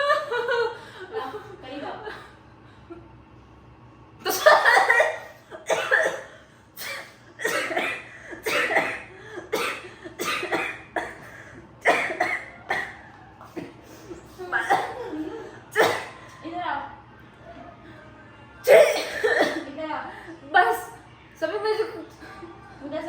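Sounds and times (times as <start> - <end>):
person coughing: 4.3 - 13.0, 14.5 - 16.2, 18.7 - 19.7.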